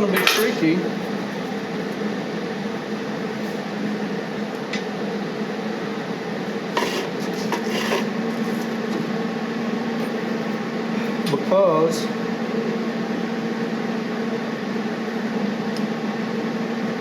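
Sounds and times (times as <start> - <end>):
torch flame hissing: 0.0 - 9.0.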